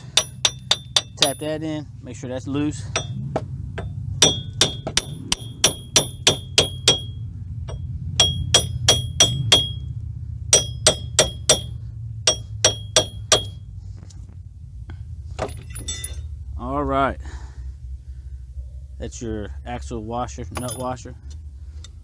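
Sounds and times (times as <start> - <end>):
hammer striking steel hub: 0.0 - 1.7, 2.7 - 13.6
steady low hum: 0.0 - 22.0.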